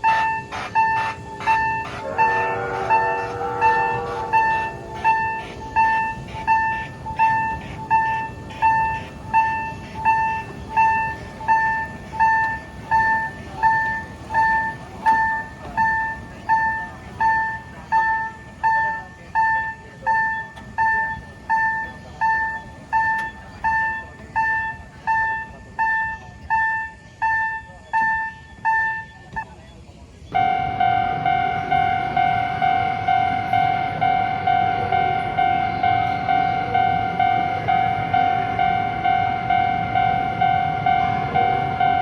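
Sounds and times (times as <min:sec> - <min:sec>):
level-crossing alarm dinging: 0:00.0 - 0:29.6, 0:30.3 - 0:42.0.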